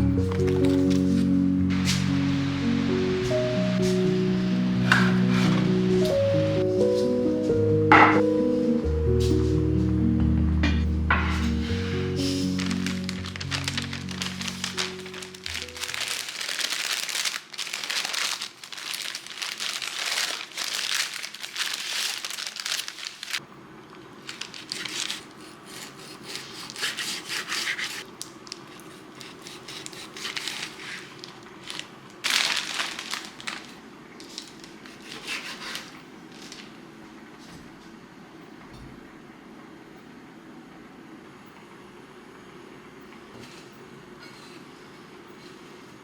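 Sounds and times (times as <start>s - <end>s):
faint steady hum: 8.7s - 46.0s
material rustling and crinkling: 11.3s - 23.4s, 24.2s - 36.8s.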